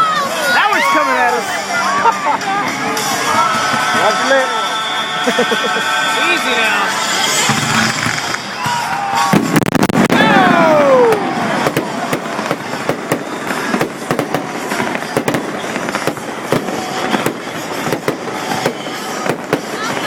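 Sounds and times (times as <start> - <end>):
fireworks bangs and crackles: 0.0 - 20.0
falling firework whistle: 7.1 - 20.0.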